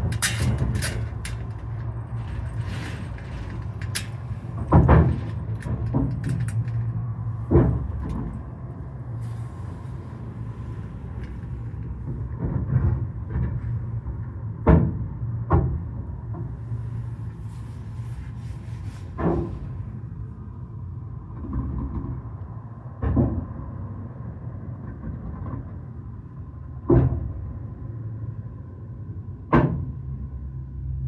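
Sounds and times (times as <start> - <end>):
steady low rumble: 0.0 - 21.5.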